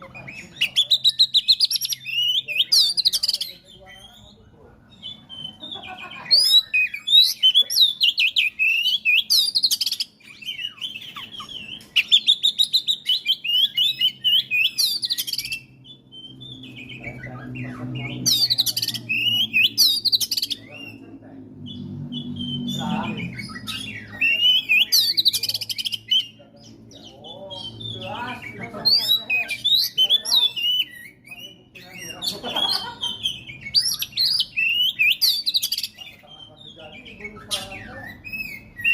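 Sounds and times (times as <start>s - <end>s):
songbird warbles and trills: 0.0s - 38.9s.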